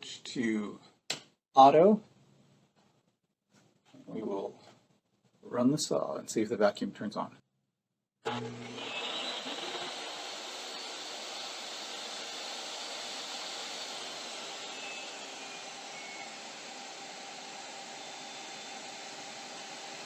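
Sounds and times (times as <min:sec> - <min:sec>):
table saw whirring: 0:08.2 - 0:20.0
shop vacuum running: 0:08.3 - 0:20.0.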